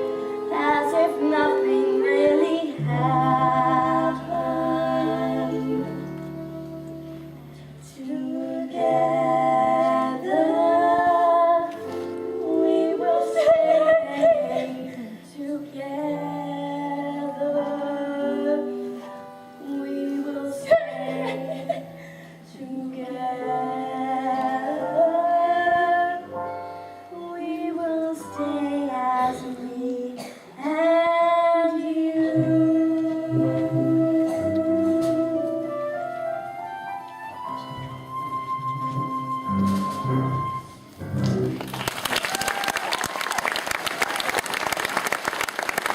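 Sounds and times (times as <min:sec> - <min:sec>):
woman singing: 0:00.0 - 0:21.9, 0:22.5 - 0:26.3, 0:27.2 - 0:35.9
instrumental accompaniment: 0:32.2 - 0:41.9.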